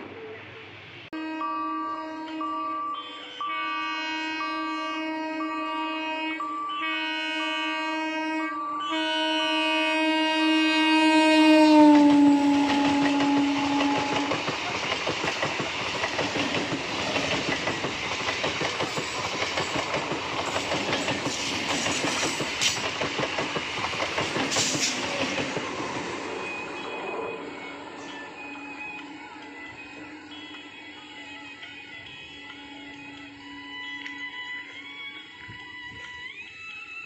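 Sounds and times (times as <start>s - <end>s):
train rumbling over rails: 0.0s - 36.4s
train horn: 1.1s - 15.6s, 26.4s - 36.1s.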